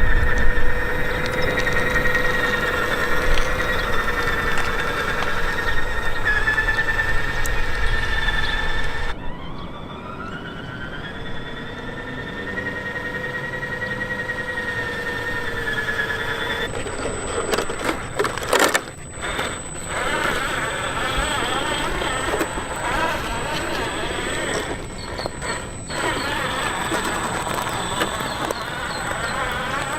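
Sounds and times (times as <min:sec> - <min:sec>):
rough scraping and rattling: 0:00.0 - 0:09.1, 0:14.7 - 0:29.9
toy truck jolts: 0:00.0 - 0:09.1, 0:15.3 - 0:29.9
electric motor whine: 0:00.0 - 0:29.9.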